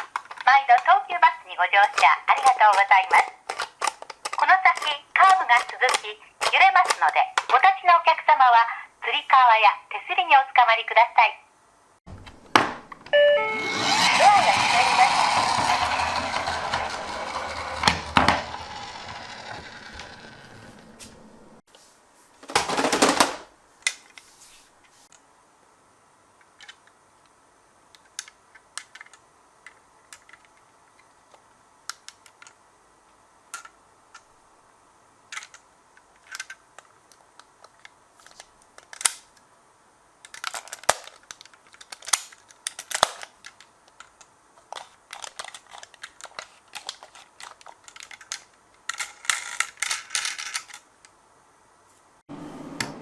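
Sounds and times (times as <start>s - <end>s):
toy cars clattering on track: 13.5s - 20.8s, 44.7s - 50.8s.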